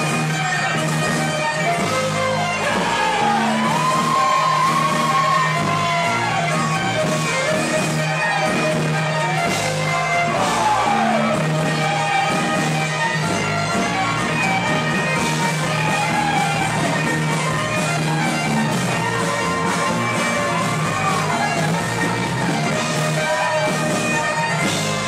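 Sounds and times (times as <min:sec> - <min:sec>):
folk-rock song: 0:00.0 - 0:25.0
strummed guitar: 0:00.0 - 0:25.0
loud shouted singing: 0:02.6 - 0:06.4.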